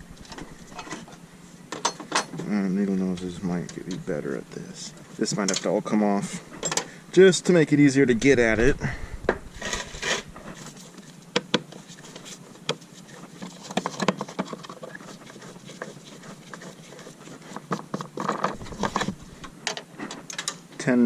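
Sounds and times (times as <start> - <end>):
hand tools and metal parts clicking: 0.2 - 2.4, 5.4 - 5.8, 6.6 - 6.9, 13.4 - 20.6.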